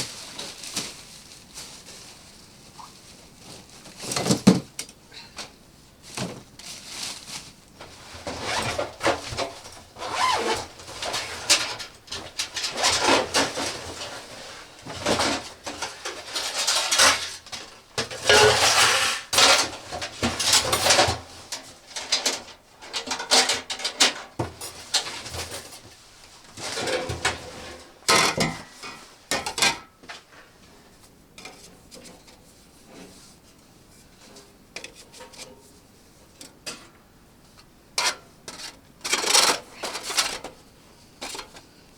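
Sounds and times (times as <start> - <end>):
rustling: 0.0 - 29.4.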